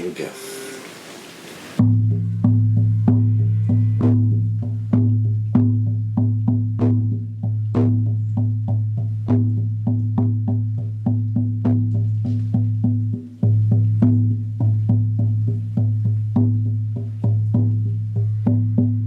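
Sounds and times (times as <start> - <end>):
frame drum beaten: 1.7 - 19.0.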